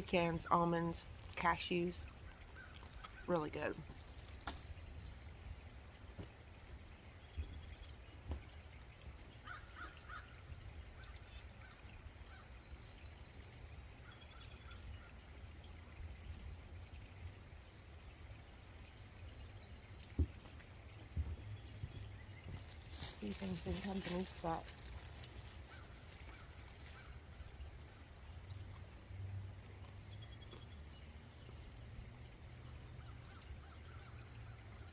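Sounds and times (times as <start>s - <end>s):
faint bird calls and chirps: 1.7s - 17.3s.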